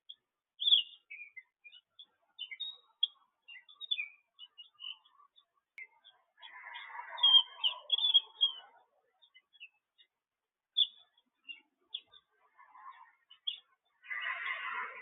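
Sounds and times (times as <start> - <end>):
birds chirping: 0.0 - 15.0.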